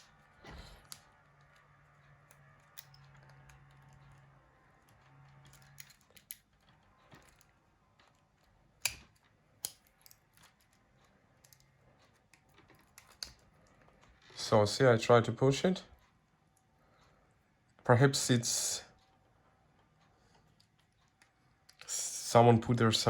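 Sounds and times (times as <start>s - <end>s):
screwdriver clicking and scraping: 0.0s - 7.5s, 8.8s - 10.8s, 11.4s - 13.6s.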